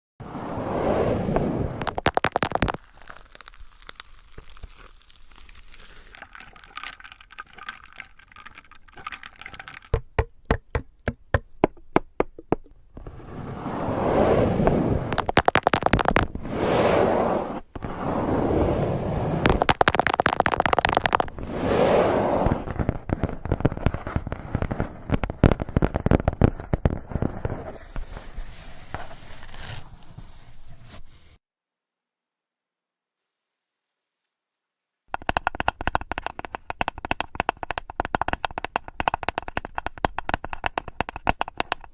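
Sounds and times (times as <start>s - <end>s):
rustling: 1.1s - 10.0s, 12.8s - 31.4s
hard items clattering: 6.1s - 11.0s.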